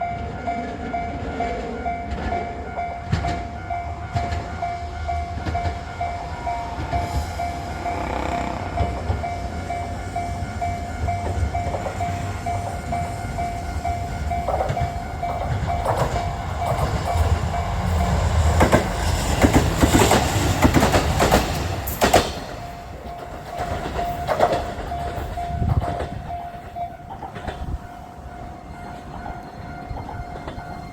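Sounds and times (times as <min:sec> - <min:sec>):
level crossing bell ringing: 0:00.0 - 0:18.5, 0:22.6 - 0:27.4
train rumble: 0:00.0 - 0:30.9
wheels clacking over rail joints: 0:00.0 - 0:30.9.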